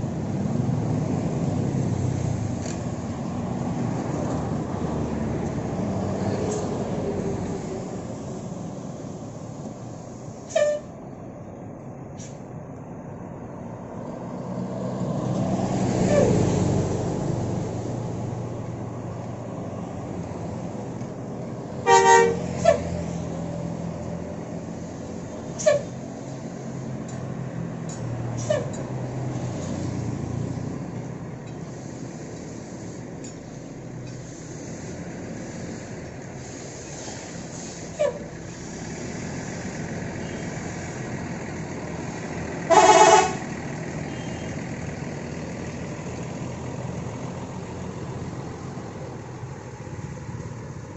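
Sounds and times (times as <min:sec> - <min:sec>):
bus engine running: 0:00.0 - 0:50.9
heavy vehicle approaching: 0:00.0 - 0:50.9
road traffic noise: 0:00.0 - 0:50.9
car horn toot: 0:21.8 - 0:22.8, 0:42.7 - 0:43.4.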